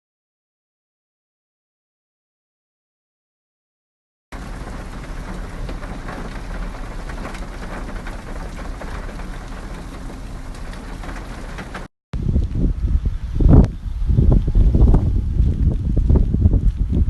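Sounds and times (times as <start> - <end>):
steady rainfall: 4.4 - 11.9.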